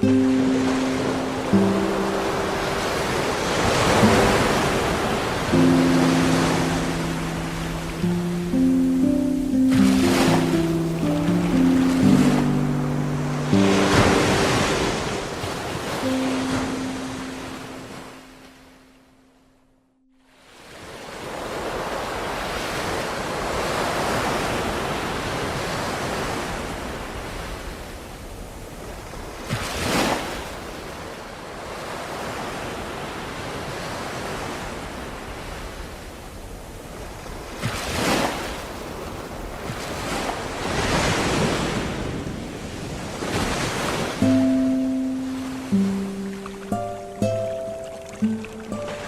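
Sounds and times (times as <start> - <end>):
music notes: 0.0 - 19.3, 44.2 - 49.0
ocean waves breaking on shore: 0.0 - 49.0.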